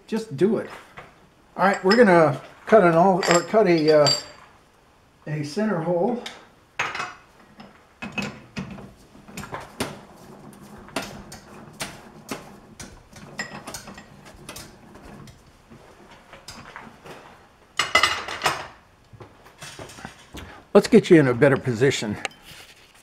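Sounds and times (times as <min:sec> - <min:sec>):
metal tools clinking: 0:01.6 - 0:02.3, 0:03.0 - 0:04.5.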